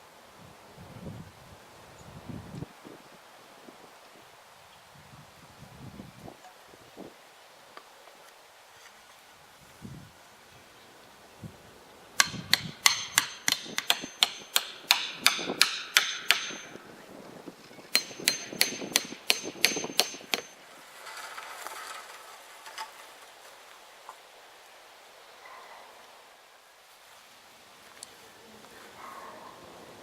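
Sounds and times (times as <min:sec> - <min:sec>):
faint rustle: 0:06.2 - 0:11.8, 0:20.5 - 0:30.0
hammer driving nails into wood: 0:12.2 - 0:16.8, 0:17.9 - 0:20.5.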